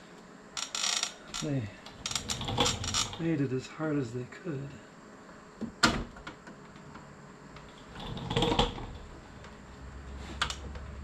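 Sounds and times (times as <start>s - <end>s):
tool scraping rattle: 0.9s - 3.3s, 7.7s - 9.1s.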